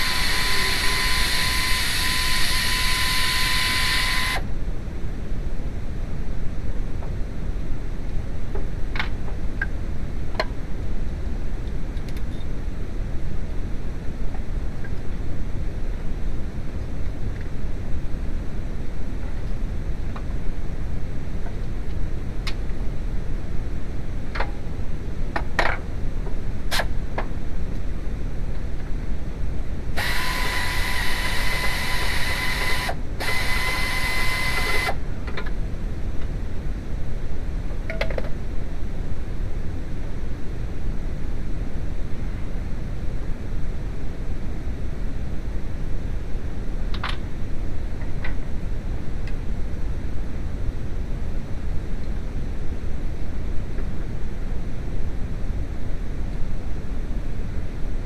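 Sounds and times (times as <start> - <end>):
power tool whining: 0.0 - 4.4, 30.0 - 35.0
steady low hum: 0.0 - 58.0.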